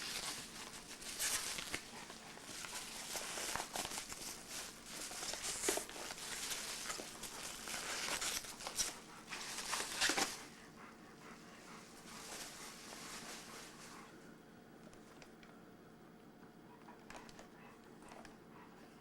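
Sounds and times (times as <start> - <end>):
paper and plastic crinkling: 0.0 - 10.5.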